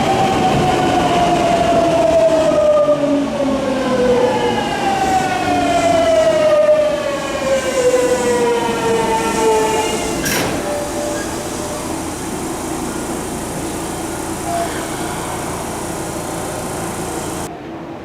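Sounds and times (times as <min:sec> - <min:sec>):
train motors whining: 0:07.8 - 0:17.5.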